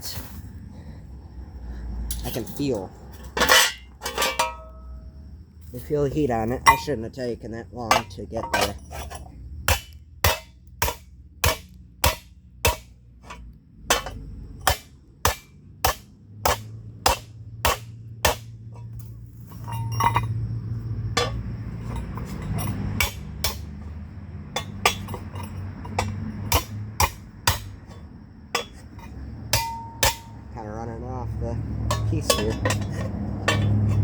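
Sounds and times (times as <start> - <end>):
steady low hum: 0.0 - 34.0
hammer striking hot steel: 9.7 - 12.9, 13.9 - 18.6, 21.2 - 22.0, 23.0 - 23.8, 24.5 - 28.0, 28.6 - 30.4, 31.8 - 34.0.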